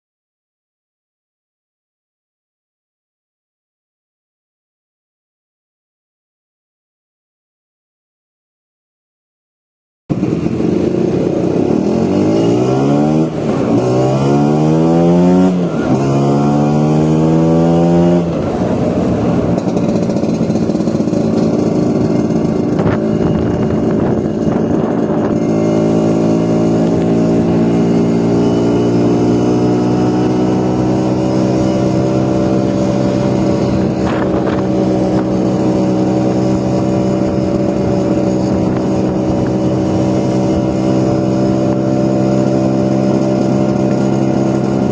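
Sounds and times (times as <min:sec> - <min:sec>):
scooter engine accelerating: 0:10.1 - 0:44.9.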